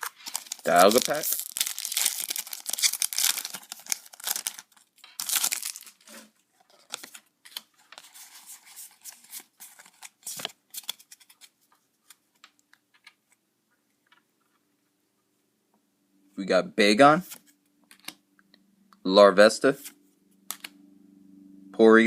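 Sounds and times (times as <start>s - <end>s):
foil wrapper tearing and crinkling: 0.0s - 6.2s.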